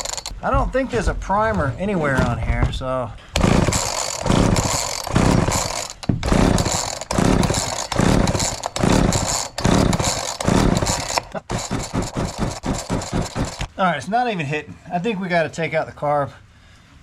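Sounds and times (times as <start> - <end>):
quick rattling strokes: 0.0 - 0.3, 3.4 - 13.7
chainsaw pull-starter cranking: 0.0 - 0.4, 3.3 - 13.8.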